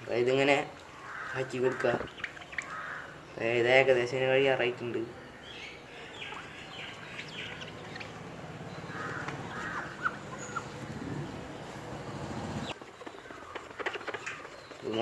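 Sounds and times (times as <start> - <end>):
crows cawing: 0.9 - 3.3, 5.9 - 11.5.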